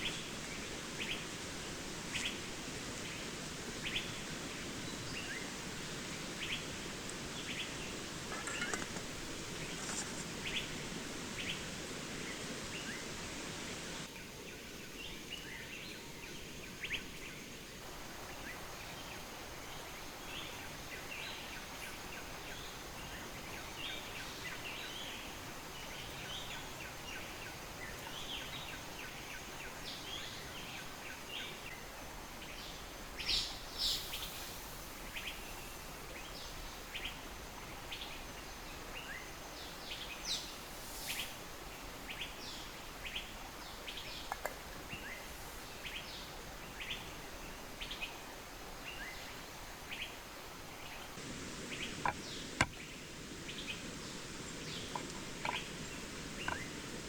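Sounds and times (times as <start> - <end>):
small birds chirping: 0.0 - 14.1, 32.4 - 48.2, 48.8 - 57.0.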